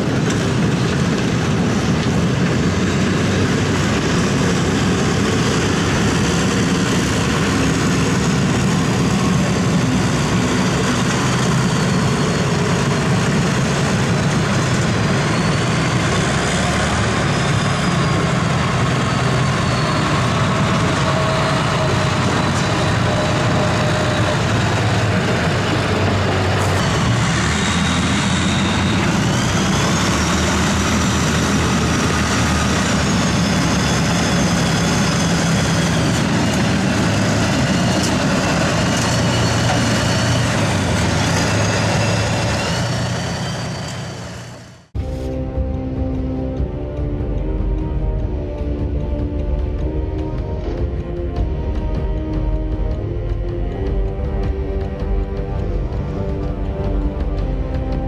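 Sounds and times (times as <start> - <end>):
vehicle engine running: 0.0 - 58.0.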